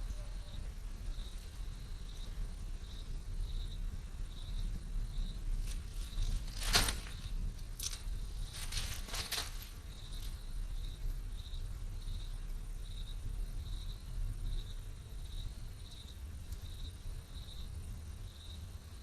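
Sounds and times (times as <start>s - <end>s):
low steady rumble: 0.0s - 19.0s
sharp rustling clatter: 5.6s - 10.4s.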